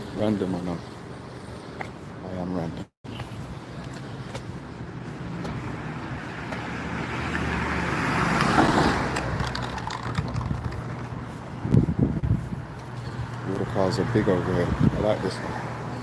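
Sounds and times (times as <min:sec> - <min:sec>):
low traffic hum: 0:00.0 - 0:16.0
car passing by: 0:05.5 - 0:10.1.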